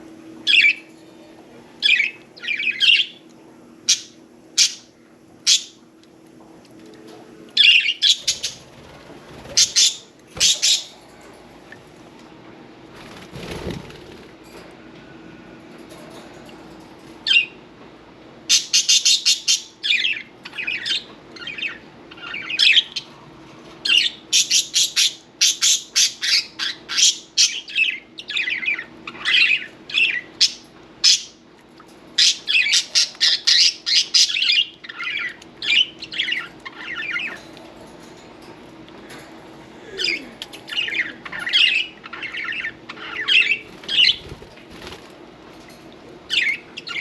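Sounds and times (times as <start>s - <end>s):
budgerigar chirping and squawking: 9.6s - 10.9s.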